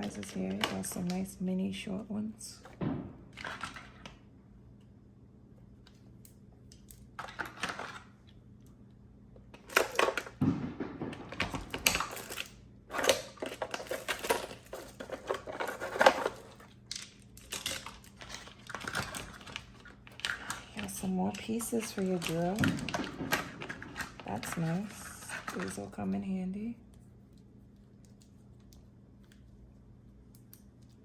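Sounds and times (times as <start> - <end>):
small tools clattering in plastic case: 3.4 - 4.1, 7.2 - 8.1, 9.6 - 10.4, 11.0 - 26.0.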